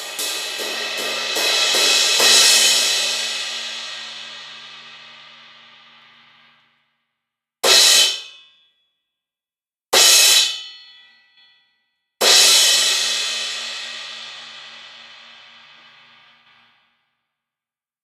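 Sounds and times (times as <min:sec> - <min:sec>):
crash cymbal struck: 0:00.0 - 0:06.7, 0:07.6 - 0:08.3, 0:12.2 - 0:16.8.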